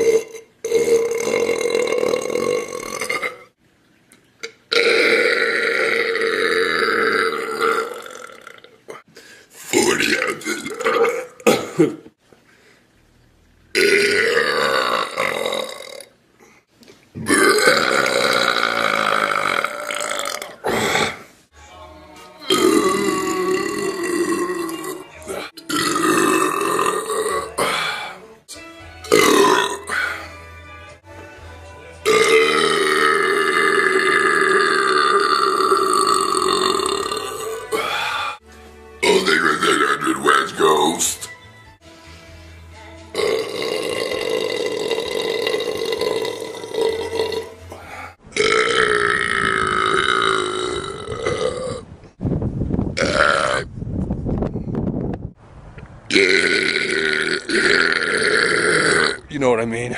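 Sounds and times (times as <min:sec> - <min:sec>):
person belching: 0:00.0 - 0:03.6, 0:04.4 - 0:09.0, 0:09.8 - 0:12.1, 0:13.7 - 0:16.2, 0:17.2 - 0:21.3, 0:22.4 - 0:28.1, 0:29.0 - 0:30.3, 0:32.0 - 0:38.4, 0:39.0 - 0:40.3, 0:43.1 - 0:51.9, 0:53.0 - 0:53.7, 0:56.1 - 0:59.3.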